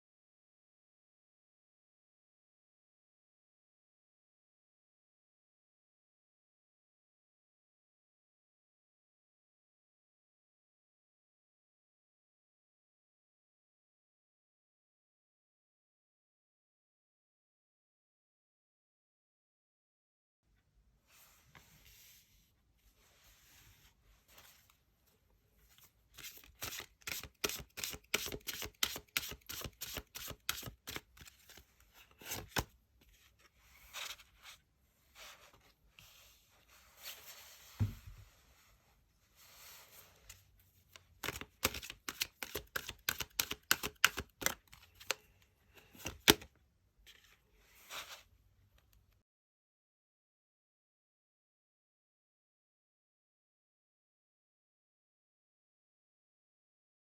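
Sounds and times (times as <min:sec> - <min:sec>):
cards shuffling: 0:25.8 - 0:32.7, 0:40.9 - 0:46.5
soft low thump: 0:37.8 - 0:38.2.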